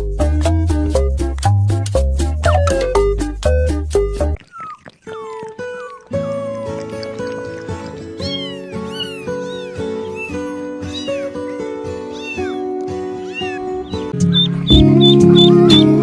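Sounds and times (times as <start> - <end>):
cat meowing: 5.1 - 15.8
background music: 6.2 - 16.0.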